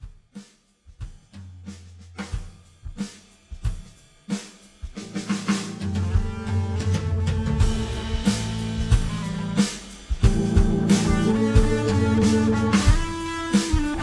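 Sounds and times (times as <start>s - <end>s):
drum kit hits: 4.9s - 14.0s
full band playing: 5.0s - 14.0s.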